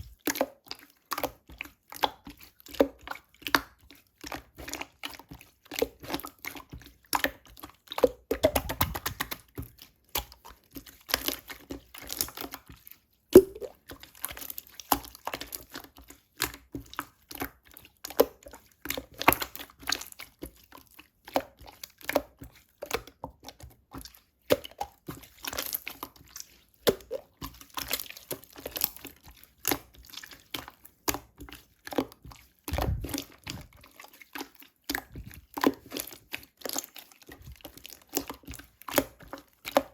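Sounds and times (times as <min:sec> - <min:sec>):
slime squeezed by hand: 0:13.4 - 0:13.8, 0:32.7 - 0:33.8.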